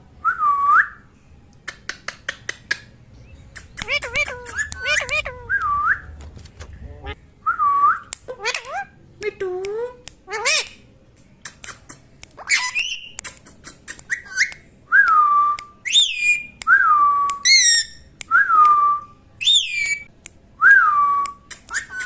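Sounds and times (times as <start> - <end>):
parrot clicks and chirps: 1.6 - 7.2, 8.0 - 14.7, 21.2 - 22.0
parrot whistling: 3.3 - 8.9
parrot rasping calls: 3.4 - 7.2, 8.3 - 9.0.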